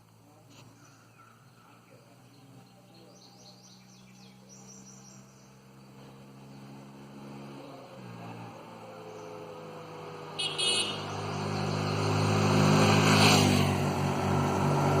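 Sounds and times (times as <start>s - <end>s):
vehicle engine running: 1.4s - 13.1s.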